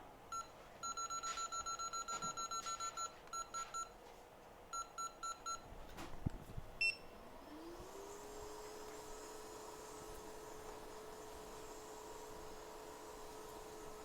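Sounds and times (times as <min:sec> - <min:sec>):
fan spinning up with hum: 0:05.5 - 0:14.0
short control panel beeps: 0:06.8 - 0:07.1.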